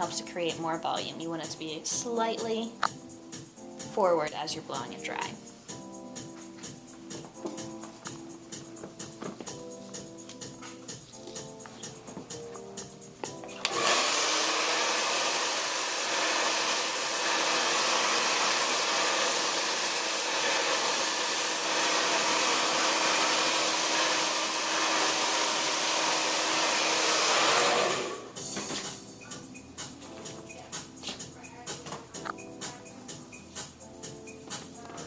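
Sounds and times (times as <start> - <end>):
blow dryer running: 13.2 - 29.1.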